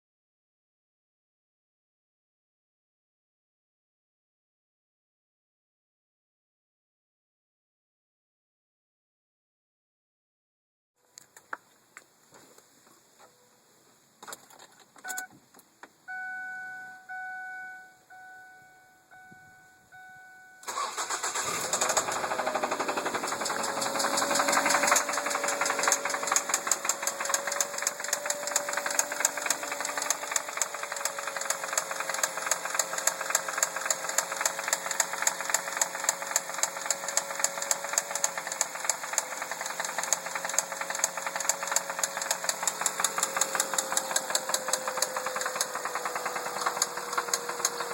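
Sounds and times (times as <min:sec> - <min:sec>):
car engine cranking and idling: 0:19.9 - 0:47.9
engine knocking rattle: 0:20.7 - 0:47.9.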